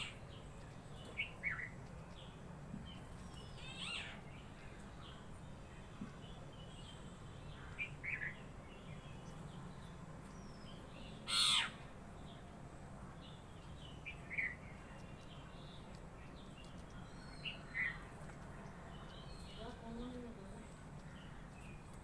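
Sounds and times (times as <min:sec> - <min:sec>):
birds chirping: 0:00.0 - 0:22.0
bird calling: 0:11.2 - 0:11.9.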